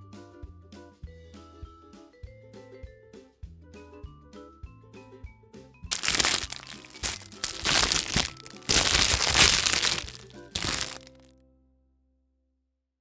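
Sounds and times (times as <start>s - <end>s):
wrapper crinkling: 5.9s - 11.2s.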